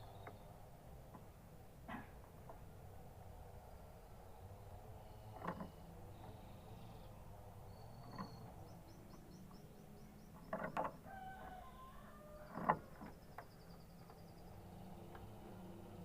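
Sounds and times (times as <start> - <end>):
canary singing: 5.7 - 15.0.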